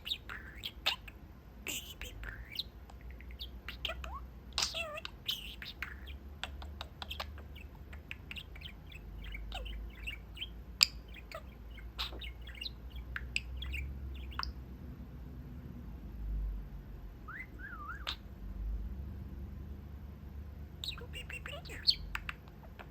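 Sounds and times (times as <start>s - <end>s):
budgie chirping and chattering: 0.0s - 14.6s, 17.3s - 18.3s, 20.8s - 22.9s
budgie warbling whistle: 17.3s - 18.2s.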